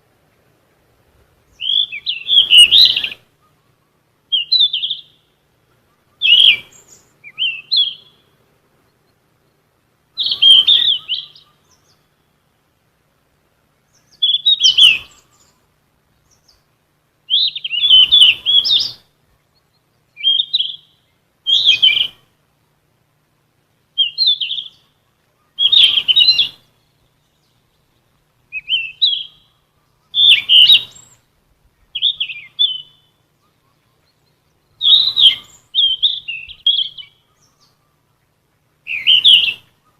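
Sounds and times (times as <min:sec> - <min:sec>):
flycatcher chirpy song: 0:01.4 - 0:12.5, 0:13.7 - 0:22.4, 0:23.9 - 0:39.9.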